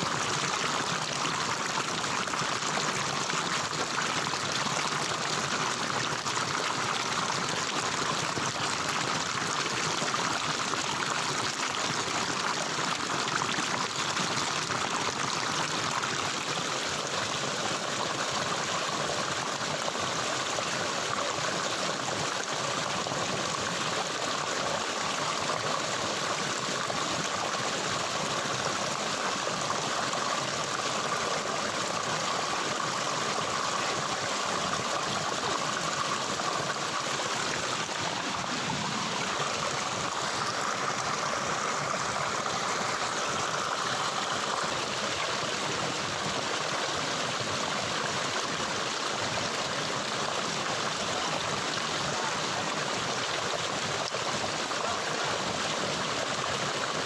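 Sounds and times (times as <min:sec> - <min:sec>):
stream water rushing: 0:00.0 - 0:57.0.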